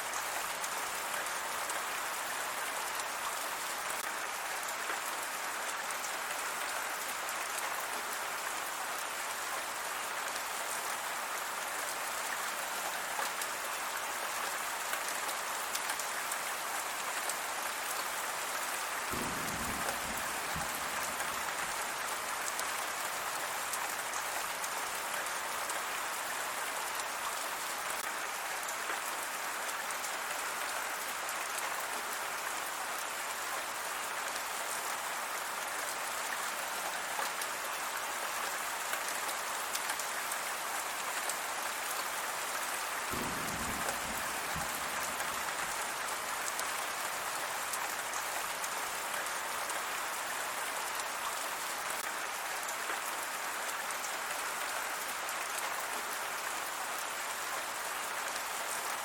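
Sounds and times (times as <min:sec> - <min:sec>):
steady rain falling: 0:00.0 - 0:59.0.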